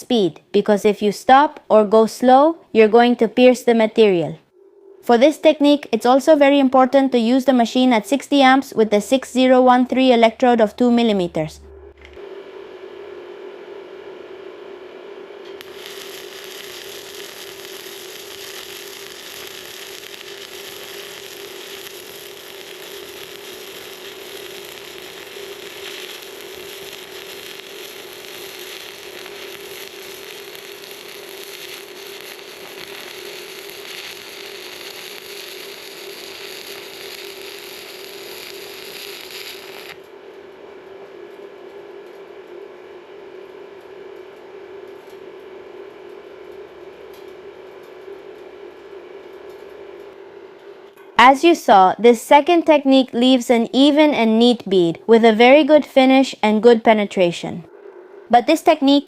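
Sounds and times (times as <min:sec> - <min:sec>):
steady hum: 0:00.0 - 0:59.0
welding arc crackling: 0:09.2 - 0:54.2.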